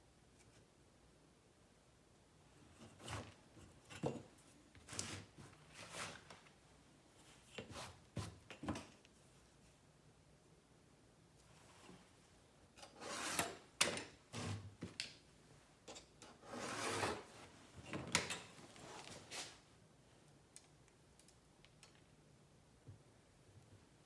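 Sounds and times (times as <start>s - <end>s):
tools scraping on clay: 12.8s - 13.7s, 15.9s - 17.3s.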